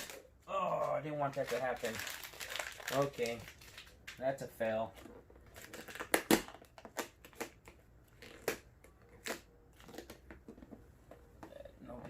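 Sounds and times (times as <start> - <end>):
paper sheet crinkling: 0.8 - 4.2.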